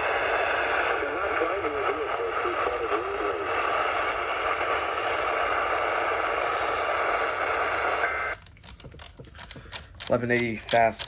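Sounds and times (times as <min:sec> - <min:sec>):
radio static hiss: 0:00.0 - 0:08.4.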